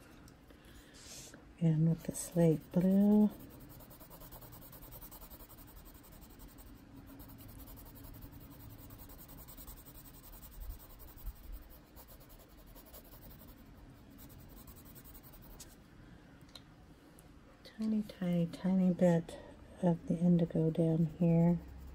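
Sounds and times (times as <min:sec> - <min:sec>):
pencil scratching on paper: 0:01.9 - 0:15.8.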